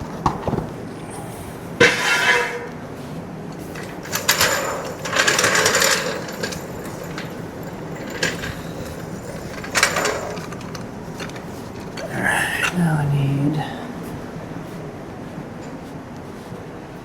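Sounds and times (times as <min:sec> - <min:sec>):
low shop hum: 0:00.0 - 0:17.0
metal tools clanking and rattling: 0:01.8 - 0:02.8, 0:03.5 - 0:12.8.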